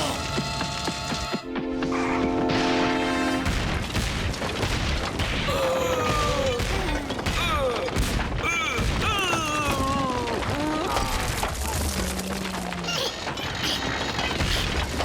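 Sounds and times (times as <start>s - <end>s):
held musical chord: 1.4s - 3.4s
clatter of crashes and bangs: 2.5s - 15.0s.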